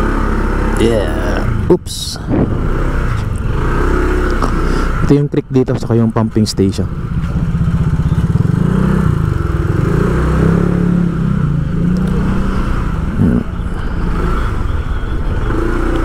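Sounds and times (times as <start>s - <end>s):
vehicle engine running: 0.0s - 16.0s.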